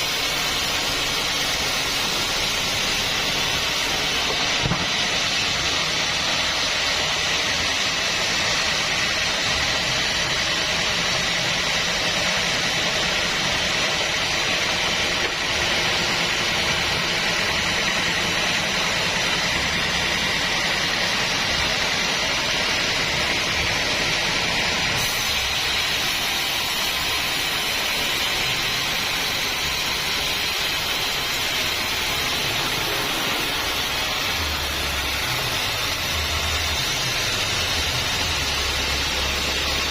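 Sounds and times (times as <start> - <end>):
bandsaw cutting wood: 24.0 - 39.9.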